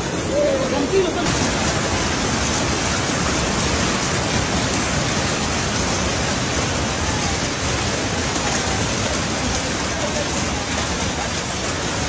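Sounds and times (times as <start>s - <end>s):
hailstones pelting down: 0.9s - 12.0s.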